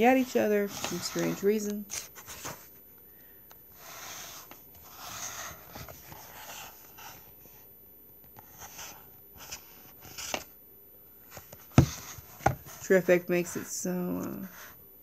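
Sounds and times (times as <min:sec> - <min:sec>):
book pages rustling: 0:00.1 - 0:02.8, 0:04.2 - 0:07.6, 0:08.3 - 0:10.5.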